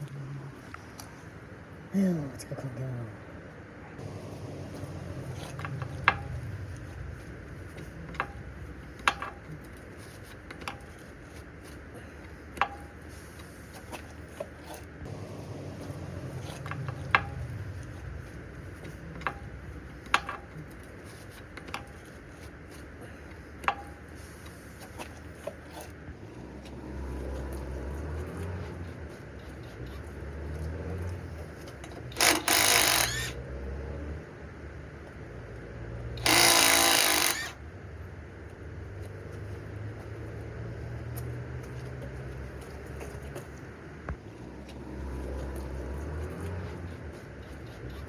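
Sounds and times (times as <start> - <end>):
low steady rumble: 0.0 - 32.2.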